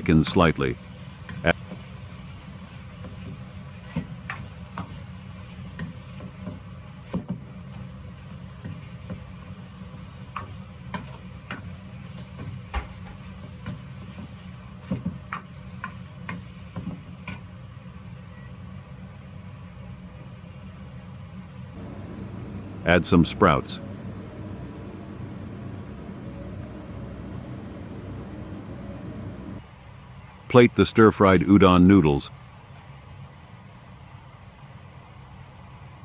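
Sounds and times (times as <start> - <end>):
steady low hum: 21.8 - 29.6.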